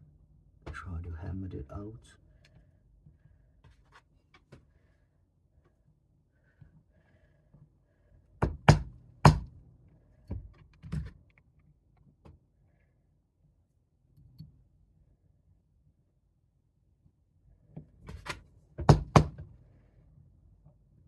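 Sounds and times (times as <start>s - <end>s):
hammer knocking on pin: 8.4s - 9.5s, 18.8s - 19.4s.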